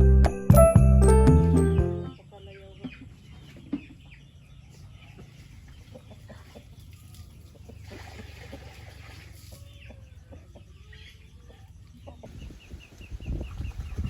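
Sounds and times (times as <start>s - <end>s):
bell-like music tune: 0.0s - 2.2s
chickens clucking: 2.1s - 14.0s.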